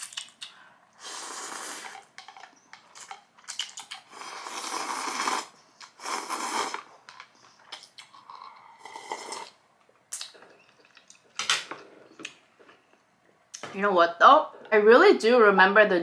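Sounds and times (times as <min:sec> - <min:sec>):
clicks and smacks of eating: 0:00.0 - 0:00.6, 0:01.8 - 0:04.1, 0:07.0 - 0:08.7, 0:09.8 - 0:13.7
slurping noodles and soup: 0:01.0 - 0:07.2, 0:08.0 - 0:09.6.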